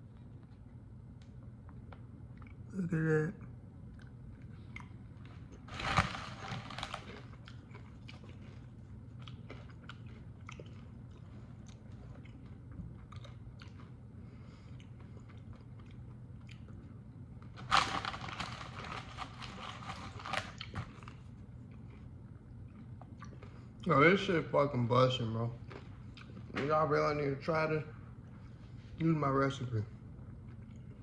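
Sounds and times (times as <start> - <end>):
person crunching food: 4.8 - 14.0, 17.6 - 21.9.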